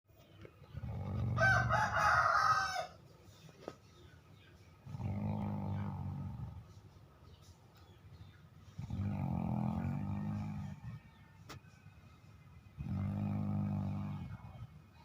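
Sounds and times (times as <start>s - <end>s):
animal snoring: 0.7s - 1.9s, 4.8s - 6.8s, 8.7s - 11.2s, 12.7s - 14.9s.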